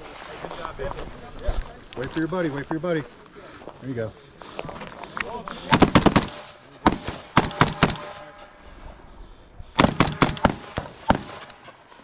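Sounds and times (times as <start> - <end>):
gunshots with short echo: 5.7 - 8.3, 9.8 - 11.6.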